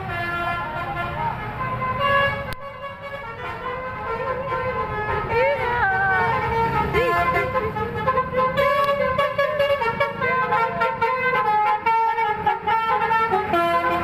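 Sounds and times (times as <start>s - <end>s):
multi-tone air horn tune: 6.3s - 14.0s.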